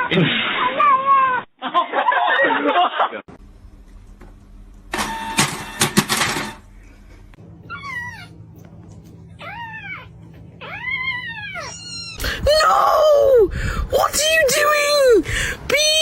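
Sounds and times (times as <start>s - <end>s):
cat meowing: 9.4s - 12.2s.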